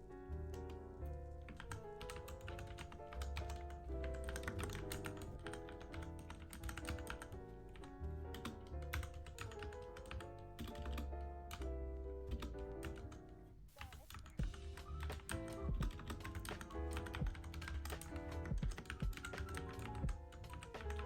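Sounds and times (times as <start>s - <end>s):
background music: 0.0s - 21.0s
mechanical keyboard clicks: 1.5s - 11.7s, 12.3s - 13.2s, 13.8s - 21.0s.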